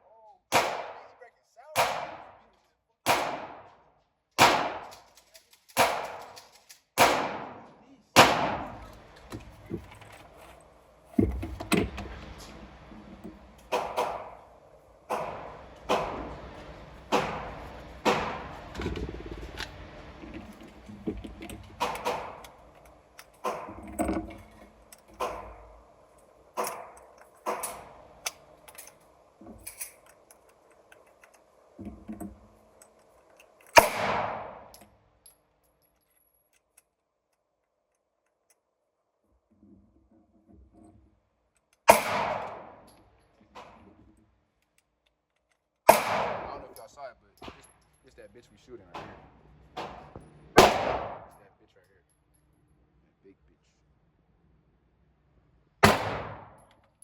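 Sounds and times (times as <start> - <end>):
gunshots with echoing tail: 0.5 - 1.2, 1.8 - 2.5, 3.1 - 3.8, 4.4 - 5.0, 5.8 - 6.4, 7.0 - 9.1, 13.6 - 19.0, 21.8 - 22.7, 23.4 - 23.8, 25.2 - 25.9, 33.8 - 34.7, 41.9 - 42.8, 45.9 - 46.8, 49.0 - 51.4, 55.8 - 56.6.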